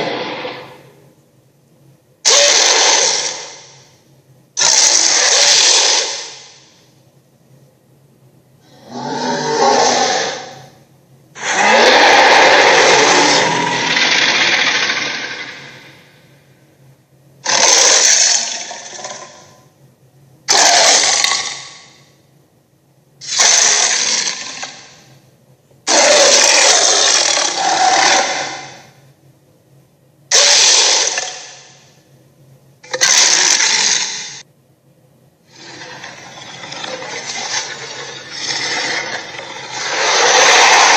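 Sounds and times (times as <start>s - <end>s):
rasping dragon roars: 0.0s - 0.8s, 8.6s - 10.7s, 11.4s - 16.2s, 25.9s - 28.9s, 35.5s - 40.9s.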